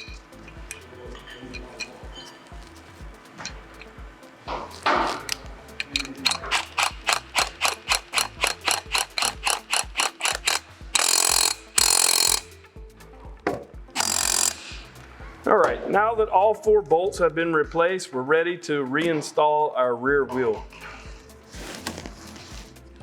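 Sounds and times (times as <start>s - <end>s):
socket ratchet clicking: 4.7s - 12.6s, 14.0s - 14.9s.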